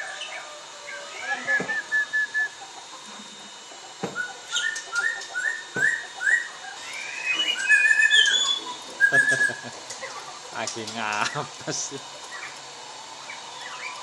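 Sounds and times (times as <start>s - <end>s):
songbird whistling: 0.2s - 2.6s, 4.1s - 9.7s, 13.2s - 14.0s.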